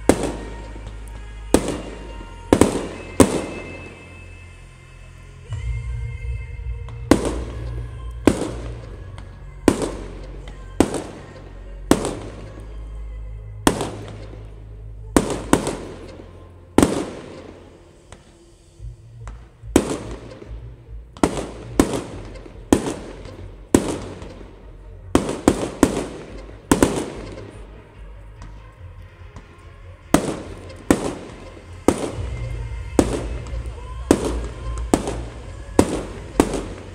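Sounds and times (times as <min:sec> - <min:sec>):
firework shells bursting: 0:19.2 - 0:36.9.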